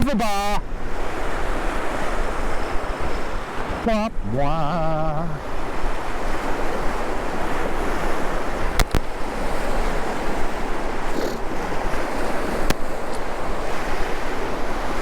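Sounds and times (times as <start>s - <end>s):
surf washing onto beach: 0.0s - 15.0s
wind buffeting microphone: 0.6s - 15.0s
sharp clicks: 8.8s - 9.1s.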